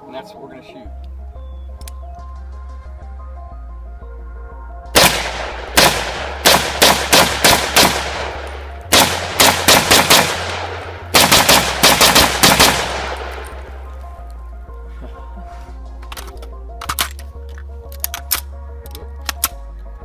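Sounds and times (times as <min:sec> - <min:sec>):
rapid gunshots with echo: 0:05.0 - 0:13.7.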